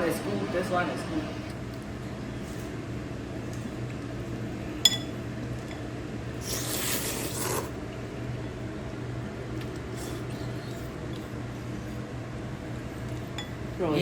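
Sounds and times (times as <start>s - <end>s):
steady low hum: 0.0s - 14.0s
tableware clink: 4.8s - 5.2s
slurping noodle soup: 6.4s - 7.8s.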